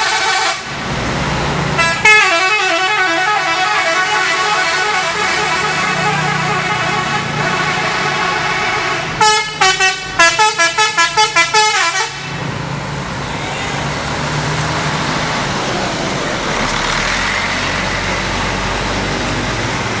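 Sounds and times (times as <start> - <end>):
bus horn playing a tune: 0.0 - 0.8, 1.8 - 12.5
bus engine and traffic rumble: 0.0 - 20.0.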